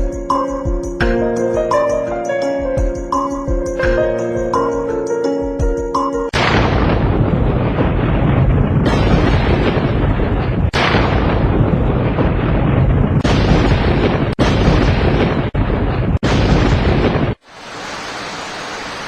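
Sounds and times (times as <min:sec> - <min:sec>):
thunder rumbling: 0:06.4 - 0:17.4
heavy rain: 0:16.4 - 0:19.0.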